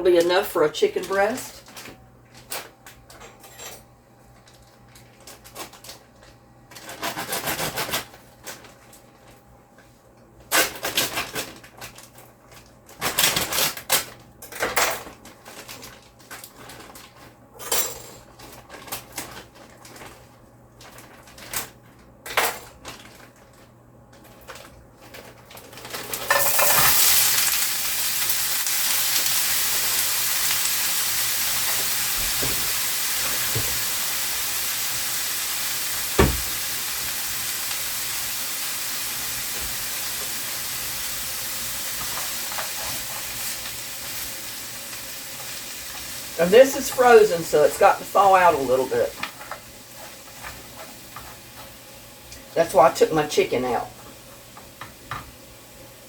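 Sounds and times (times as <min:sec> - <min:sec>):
kitchenware clattering: 0:26.1 - 0:27.4
vegetables sizzling in hot oil: 0:26.1 - 0:52.0.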